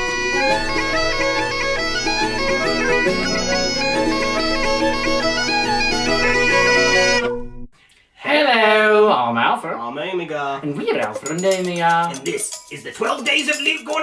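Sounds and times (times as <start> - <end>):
instrumental melody: 0.0 - 7.7.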